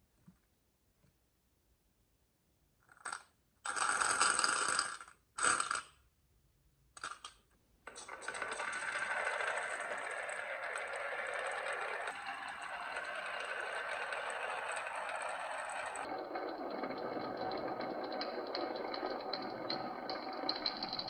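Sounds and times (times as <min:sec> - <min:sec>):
marbles rattling down a track: 0:03.0 - 0:05.9, 0:07.9 - 0:21.0.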